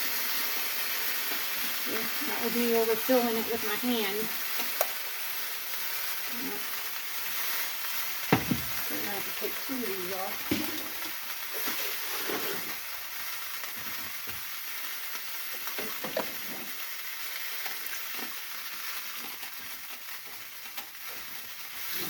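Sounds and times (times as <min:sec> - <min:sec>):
pot sizzling hiss: 0:00.0 - 0:22.0
light knocks: 0:08.3 - 0:08.8.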